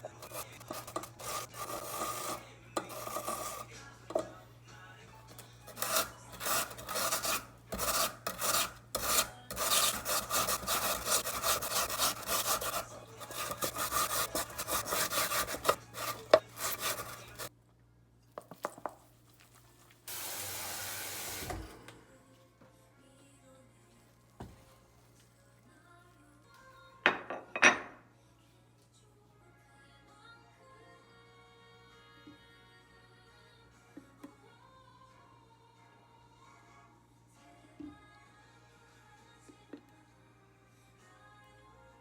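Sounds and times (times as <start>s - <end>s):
potato grating on hand grater: 0.0s - 4.3s, 5.6s - 17.5s.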